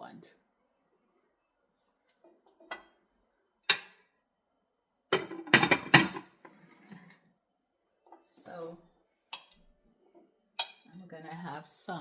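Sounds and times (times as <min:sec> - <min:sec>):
cutlery and dishes clinking: 0:05.2 - 0:07.2, 0:10.6 - 0:11.0.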